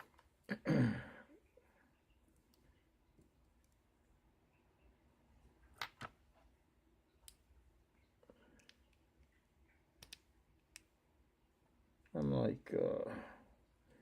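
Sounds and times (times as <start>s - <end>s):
small objects clicking and tapping: 10.0s - 10.9s.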